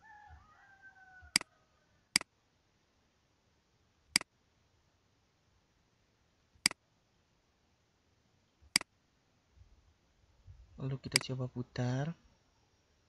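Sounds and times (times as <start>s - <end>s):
faint rooster crow: 0.0s - 2.2s.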